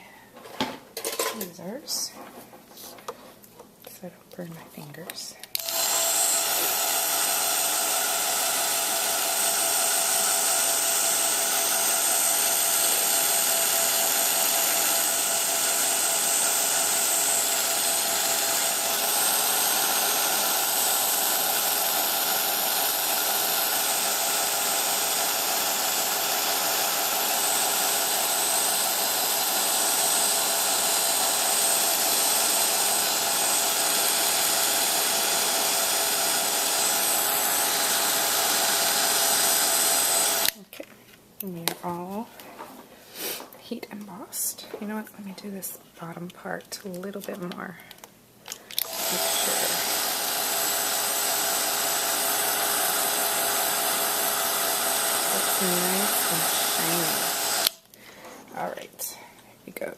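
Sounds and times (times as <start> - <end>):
heat tool fan whining: 5.5 - 40.6, 48.8 - 57.8.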